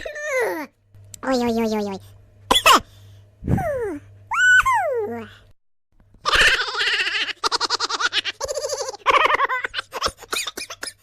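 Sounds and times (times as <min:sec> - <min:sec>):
voice laughing in rapid pulses: 0:06.2 - 0:11.0.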